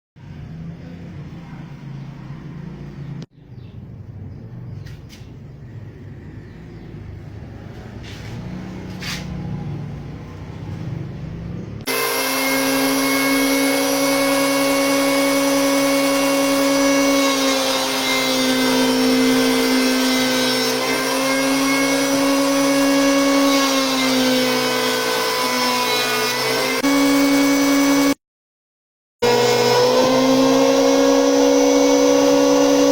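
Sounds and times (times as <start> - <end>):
electric power planer whining: 11.8 - 28.2, 29.2 - 32.9.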